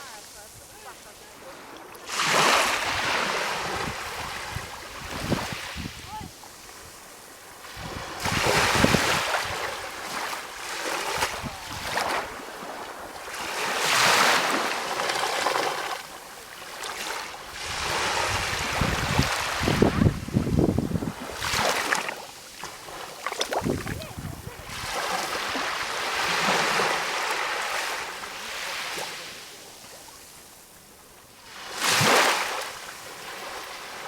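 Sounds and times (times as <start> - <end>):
sea waves washing in: 0.0 - 34.0
wind buffeting the microphone: 2.8 - 7.0, 7.7 - 10.0, 11.1 - 12.4, 17.5 - 21.7, 23.5 - 26.7.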